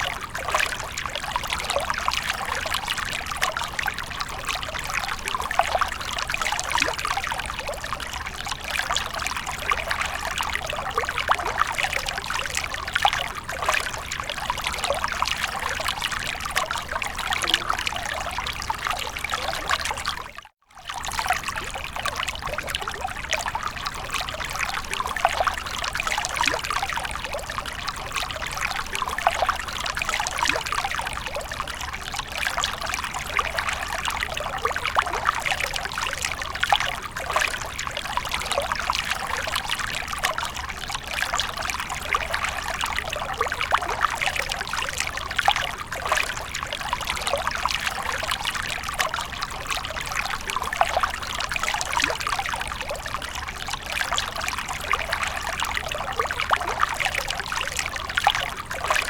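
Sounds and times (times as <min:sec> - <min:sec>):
water fountain splashing: 0:15.0 - 0:20.2.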